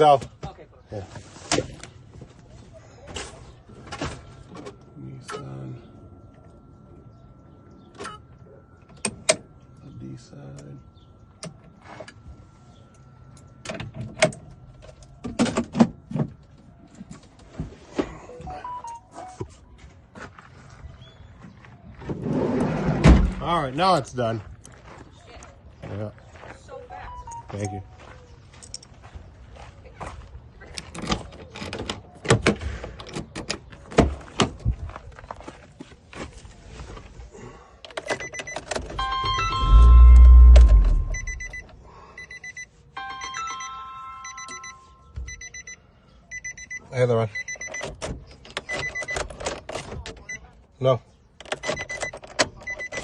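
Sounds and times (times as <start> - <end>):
short beeps: 4.4 - 13.7, 18.3 - 19.4, 38.1 - 47.8, 52.7 - 53.0.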